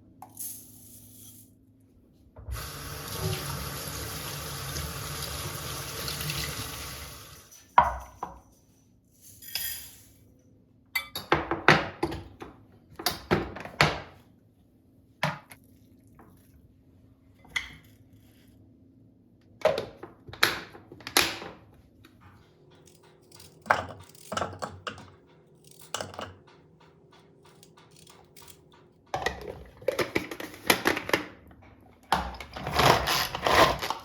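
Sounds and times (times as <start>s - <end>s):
tap running into sink: 2.5s - 7.1s
clinks and knocks: 22.2s - 30.2s.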